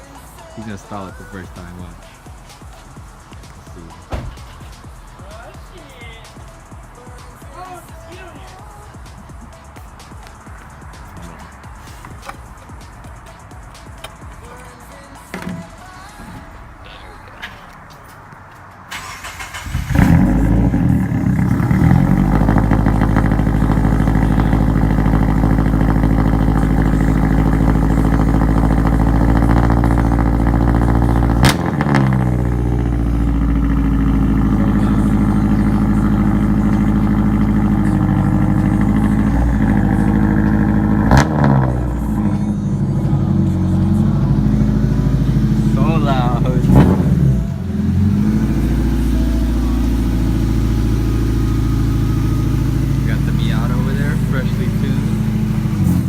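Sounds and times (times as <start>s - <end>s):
car engine starting and running: 0.0s - 7.1s, 15.3s - 56.0s
sharp knocks: 4.1s - 4.6s.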